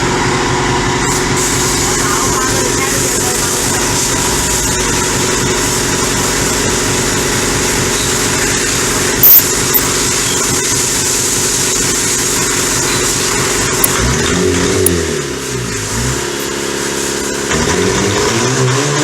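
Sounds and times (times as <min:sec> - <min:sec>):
boat diesel engine running: 0:00.0 - 0:18.3
sharp engine pop: 0:09.2 - 0:09.6.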